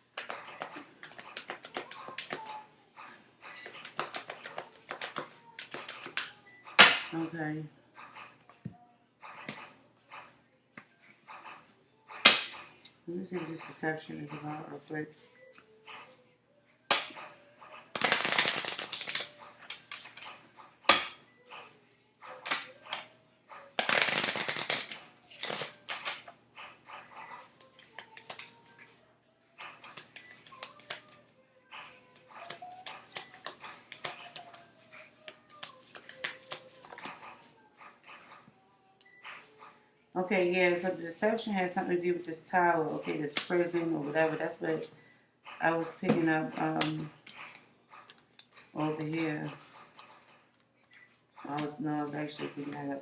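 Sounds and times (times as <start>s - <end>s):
cards being shuffled: 0.2s - 2.5s, 3.6s - 6.4s, 18.0s - 20.2s, 23.8s - 26.2s, 27.8s - 28.7s, 29.6s - 31.1s, 32.4s - 34.6s, 35.3s - 37.4s.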